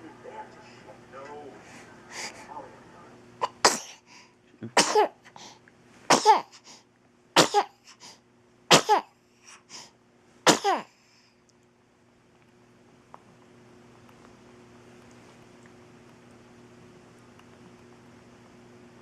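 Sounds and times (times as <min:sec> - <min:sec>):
person sneezing: 0:07.4 - 0:07.8, 0:08.7 - 0:09.1, 0:10.5 - 0:10.9.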